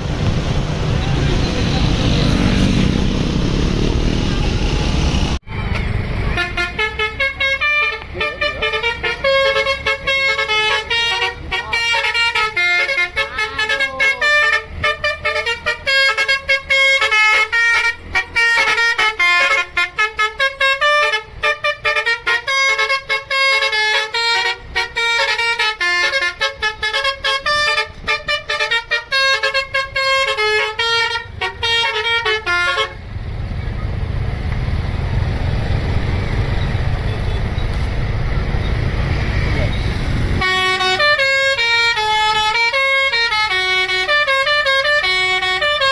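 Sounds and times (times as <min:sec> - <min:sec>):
multi-tone bus horn melody: 0:05.4 - 0:33.2, 0:39.1 - 0:45.9.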